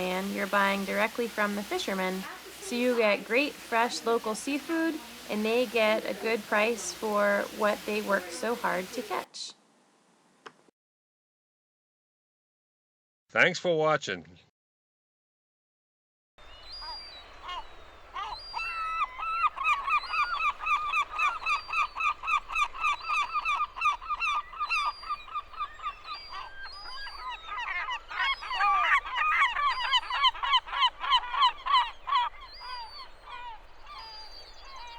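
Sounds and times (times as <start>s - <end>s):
birds honking calls: 0.0s - 9.2s, 16.4s - 34.9s.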